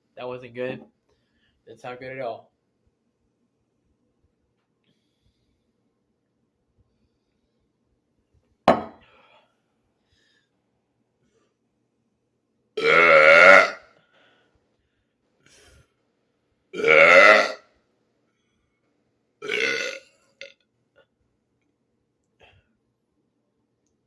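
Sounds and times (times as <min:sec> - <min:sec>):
man burping: 0:12.8 - 0:13.9, 0:16.8 - 0:17.6, 0:19.4 - 0:20.6.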